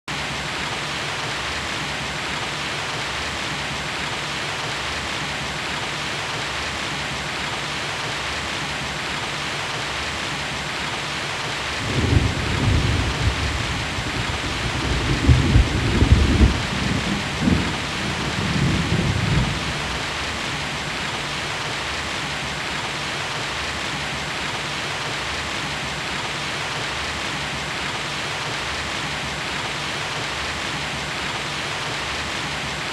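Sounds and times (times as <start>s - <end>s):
heavy rain: 0.1s - 32.9s
thunder rumbling: 11.8s - 20.7s.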